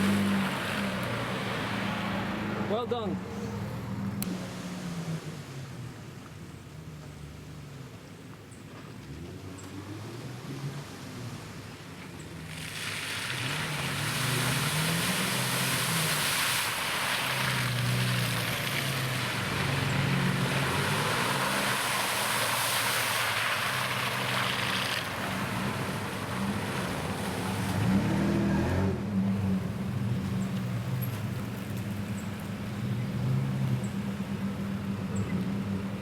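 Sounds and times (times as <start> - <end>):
engine revving under load: 0.0 - 5.8, 17.2 - 30.4
tyres spraying water and mud: 0.0 - 7.9, 8.9 - 36.0.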